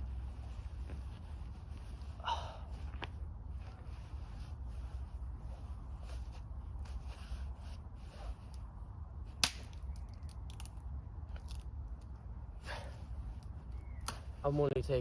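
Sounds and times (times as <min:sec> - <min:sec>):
clothing rustling: 0:00.0 - 0:08.5.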